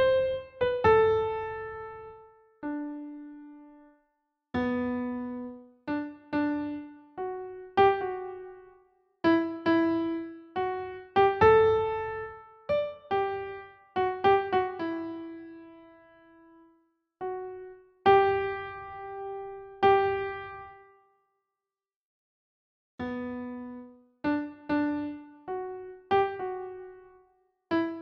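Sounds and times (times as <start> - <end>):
slow piano melody: 0.0 - 3.9, 4.6 - 21.0, 23.0 - 28.0.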